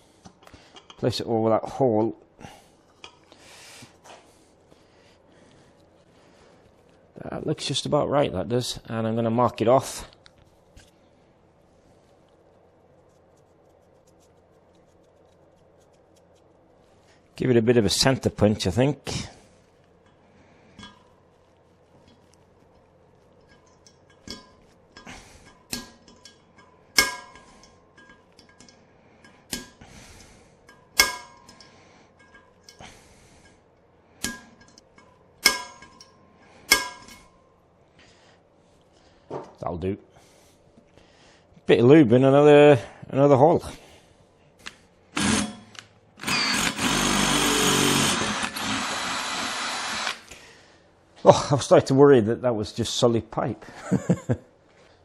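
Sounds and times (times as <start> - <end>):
hammer tapping metal punch: 25.7 - 28.7, 30.7 - 31.6
electric drill boring through steel: 45.2 - 45.6, 46.2 - 50.3.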